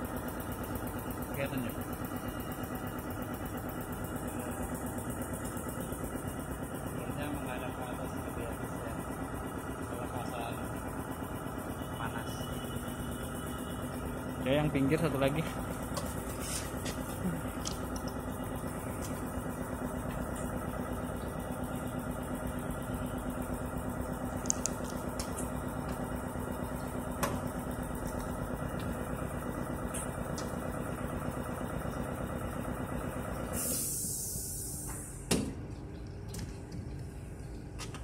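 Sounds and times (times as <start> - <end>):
air compressor humming: 0.0 - 38.0
hiss of air: 33.5 - 35.2.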